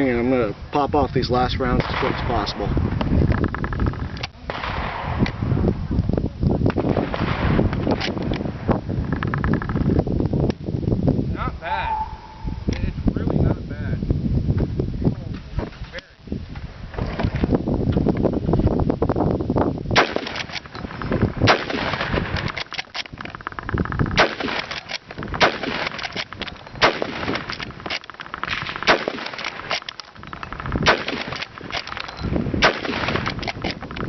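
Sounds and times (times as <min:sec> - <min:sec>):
rifle shots: 0:01.8 - 0:02.7, 0:04.5 - 0:05.4, 0:06.7 - 0:08.6, 0:20.0 - 0:23.2, 0:24.1 - 0:33.8.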